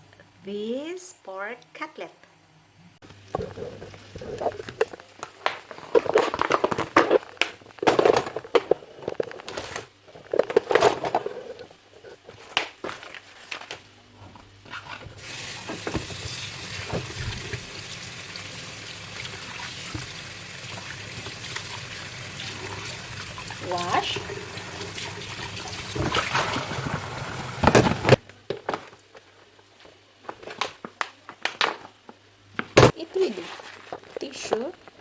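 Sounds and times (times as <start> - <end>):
kitchen clattering and rustling: 3.3 - 18.0, 19.2 - 29.0
tap water running into sink: 15.2 - 28.2.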